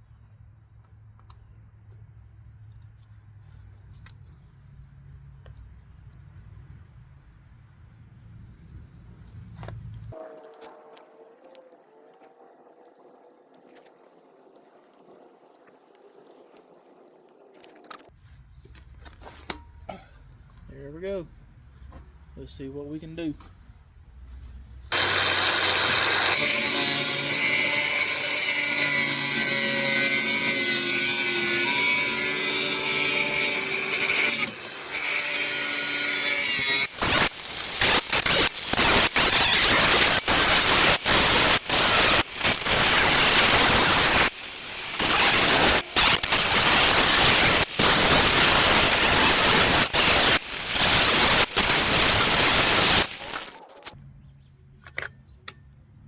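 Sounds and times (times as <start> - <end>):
power tool cutting steel sheet: 24.9 - 53.7.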